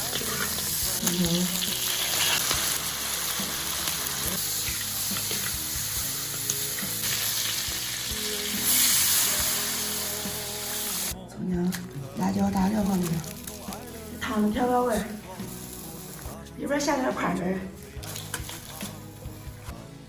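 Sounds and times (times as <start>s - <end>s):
meat sizzling in hot oil: 0.0s - 11.2s, 15.3s - 16.4s, 18.0s - 19.6s.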